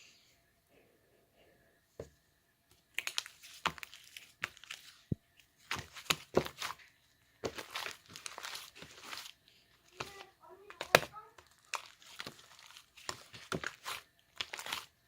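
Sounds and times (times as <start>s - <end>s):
slime crackling and popping: 2.9s - 5.0s, 5.6s - 15.0s.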